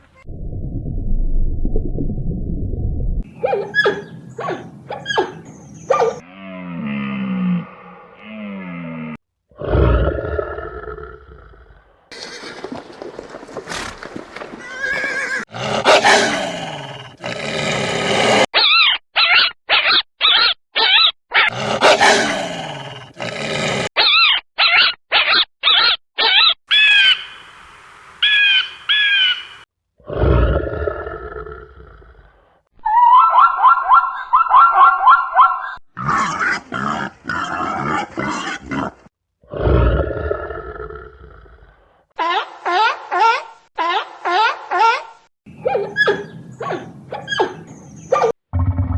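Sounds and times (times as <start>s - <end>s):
long roar-like animal calls: 6.2s - 11.6s
fast pulsing animal call: 12.1s - 15.4s, 45.5s - 48.3s
short rapidly repeated animal calls: 12.1s - 15.4s, 45.5s - 48.3s.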